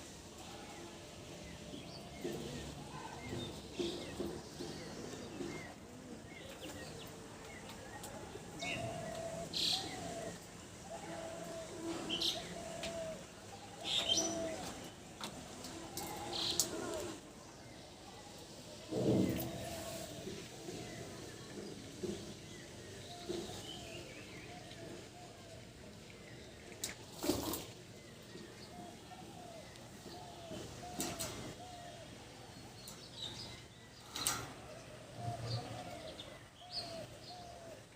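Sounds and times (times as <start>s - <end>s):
low drawn-out cooing: 7.8s - 15.0s, 15.6s - 17.2s, 34.3s - 37.9s.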